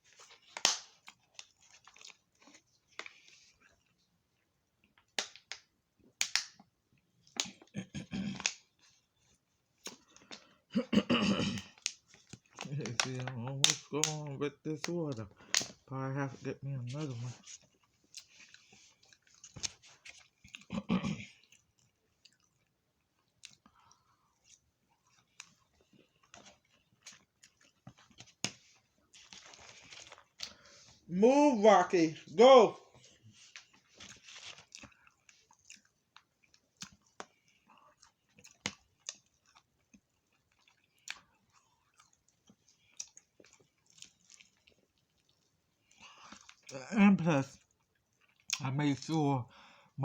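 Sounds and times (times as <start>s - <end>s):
muffled chewing: 0.0s - 31.1s, 32.1s - 50.0s
soft eating clicks and taps: 33.0s - 46.8s.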